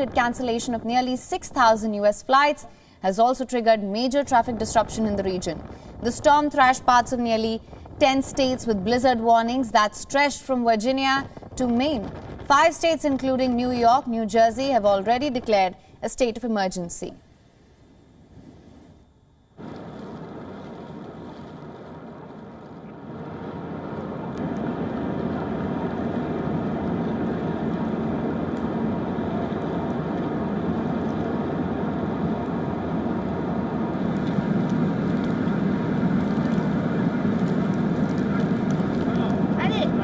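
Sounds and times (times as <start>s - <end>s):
low vehicle engine noise: 19.6s - 40.0s.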